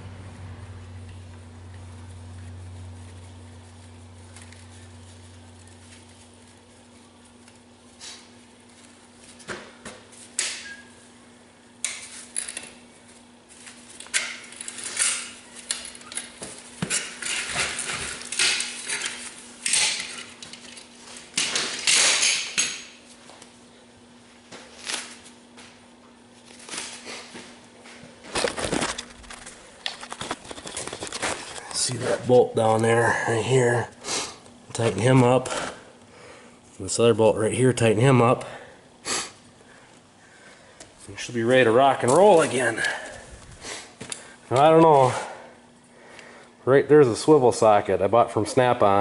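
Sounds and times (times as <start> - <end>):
metal bolts clinking and scraping: 14.0 - 20.9.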